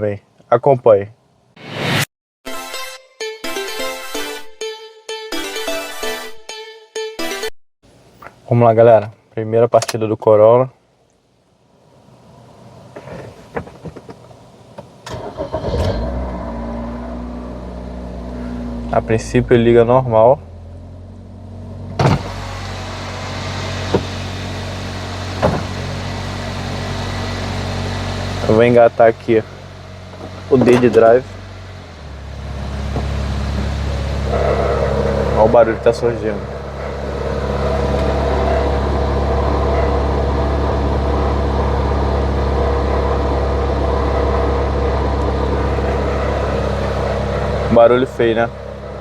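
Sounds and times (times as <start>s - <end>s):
car engine idling: 11.8s - 49.0s.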